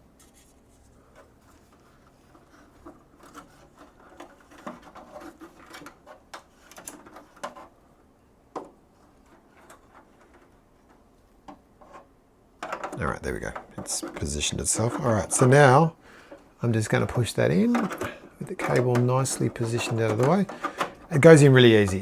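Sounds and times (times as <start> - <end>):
hands rubbing cable: 0.1 - 7.8, 12.9 - 22.0.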